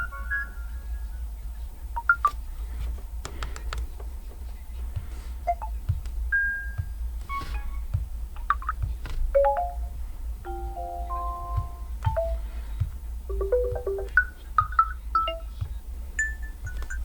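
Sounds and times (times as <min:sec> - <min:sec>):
steady low hum: 0:00.0 - 0:17.0
sharp clicks: 0:02.1 - 0:04.4
electronic notification chimes: 0:13.3 - 0:15.5.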